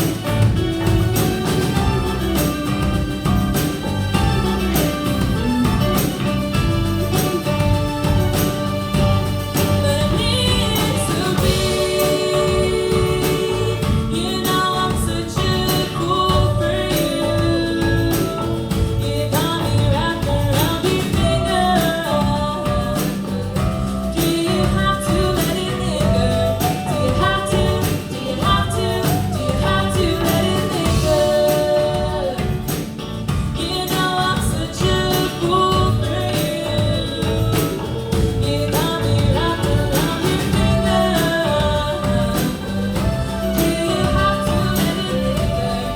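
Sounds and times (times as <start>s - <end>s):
song with singing and beat: 0.0s - 45.9s.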